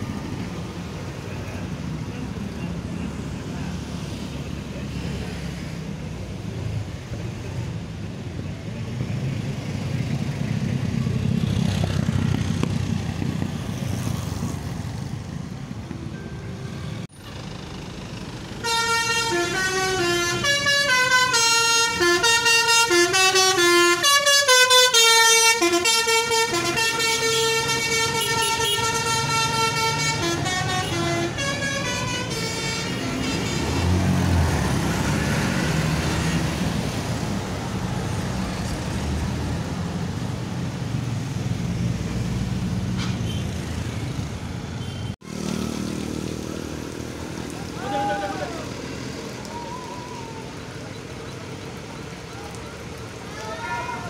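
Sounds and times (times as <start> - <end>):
idling bus engine rumble: 16.9 - 33.2
multi-tone bus horn melody: 18.6 - 34.2.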